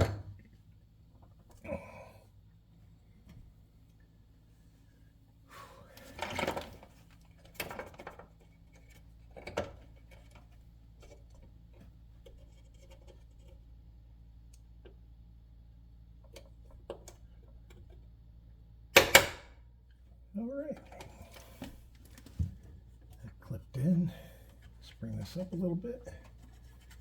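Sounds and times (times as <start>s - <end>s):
steady low hum: 19.8s - 27.0s.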